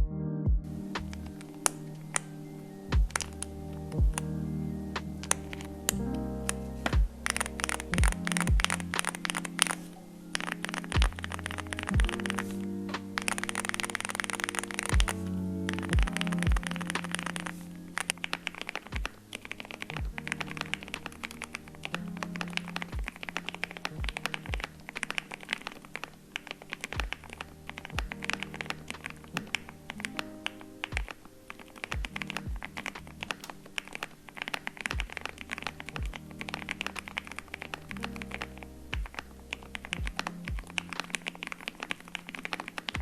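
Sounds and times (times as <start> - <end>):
background music with a beat: 0.0 - 2.3, 2.9 - 10.0, 10.8 - 13.3, 14.8 - 17.6, 18.9 - 19.2, 19.9 - 21.1, 22.9 - 23.2, 23.9 - 24.7, 27.0 - 27.2, 28.0 - 29.6, 30.9 - 31.2, 31.9 - 33.5, 34.9 - 35.2, 36.0 - 36.4, 38.9 - 39.3, 40.0 - 41.1
fast typing on mechanical keyboard: 13.2 - 21.6.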